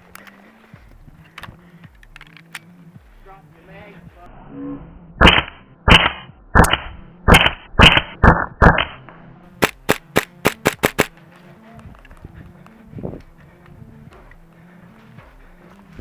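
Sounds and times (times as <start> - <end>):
airsoft gun shots: 5.2 - 9.0, 9.6 - 11.1.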